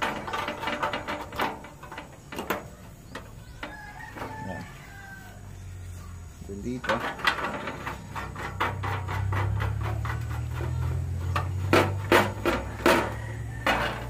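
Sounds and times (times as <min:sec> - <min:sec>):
metal clicking and scraping: 0:00.0 - 0:05.0, 0:06.4 - 0:14.0
sharp knocks on metal: 0:06.8 - 0:14.0.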